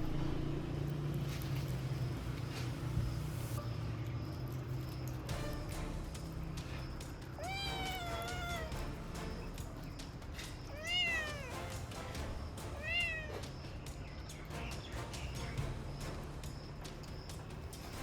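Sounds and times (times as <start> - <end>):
kitten meowing: 7.4 - 8.8, 10.7 - 11.5, 12.8 - 13.4.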